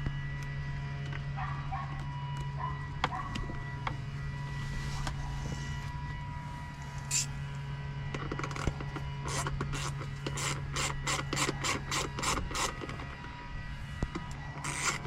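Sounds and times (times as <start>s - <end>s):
steady low hum: 0.0s - 15.0s
dog barking: 1.4s - 2.0s, 2.6s - 3.4s.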